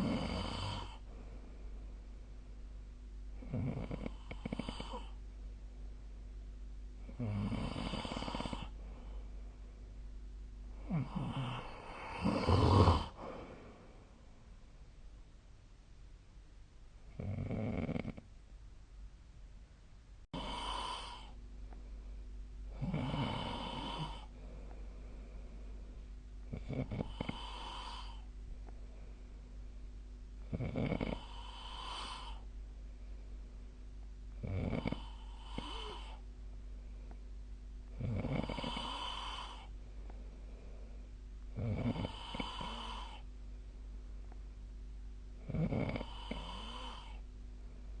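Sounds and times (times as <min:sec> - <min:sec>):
person snoring: 0:00.0 - 0:01.0, 0:03.4 - 0:05.2, 0:07.1 - 0:08.8, 0:10.8 - 0:13.8, 0:20.4 - 0:21.4, 0:22.7 - 0:24.3, 0:26.5 - 0:28.3, 0:30.5 - 0:32.5, 0:34.4 - 0:36.2, 0:37.9 - 0:39.7, 0:41.5 - 0:43.3, 0:45.4 - 0:47.2.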